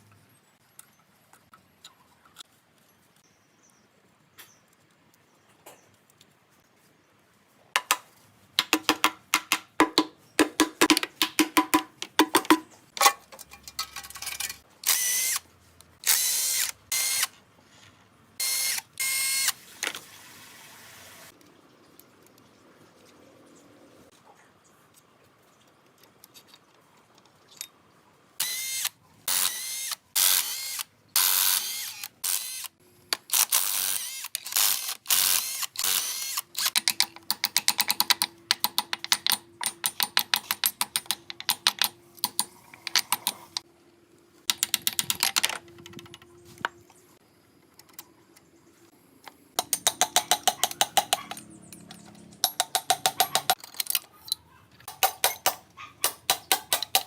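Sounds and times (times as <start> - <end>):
ratchet wrench clicking: 49.6 - 51.4.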